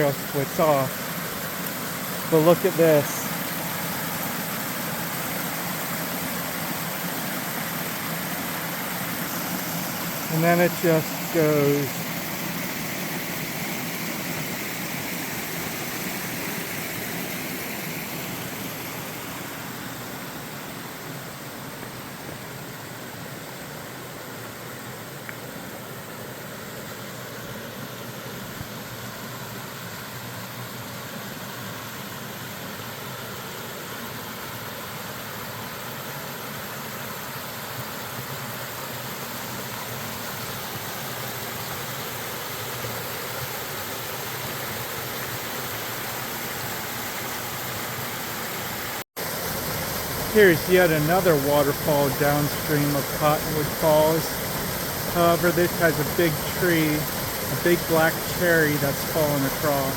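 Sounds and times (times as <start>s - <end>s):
waterfall rushing: 0.0s - 22.5s, 39.4s - 59.9s.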